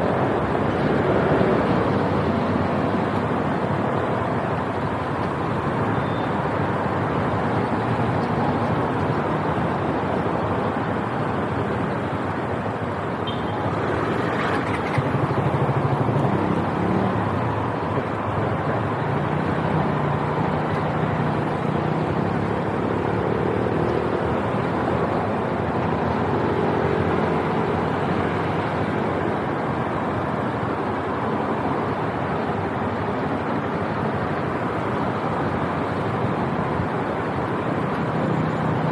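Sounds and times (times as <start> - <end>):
motorbike engine hum: 0.0 - 28.6.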